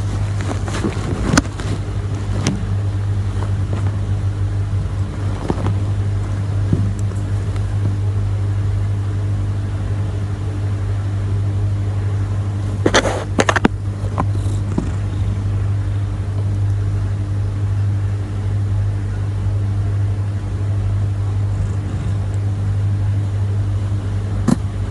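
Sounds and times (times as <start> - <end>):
steady low hum: 0.0 - 24.9.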